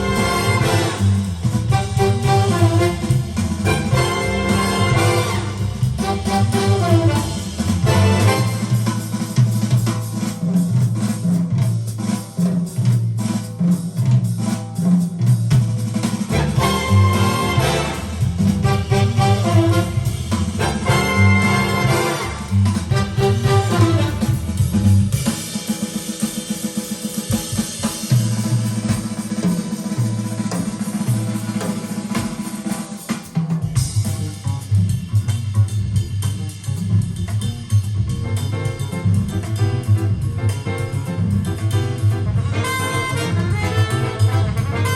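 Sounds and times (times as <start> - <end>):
stepping bass line: 0.0 - 9.0, 16.3 - 25.2
bass drum and snare: 0.0 - 44.9
swing music through speakers: 0.0 - 44.9.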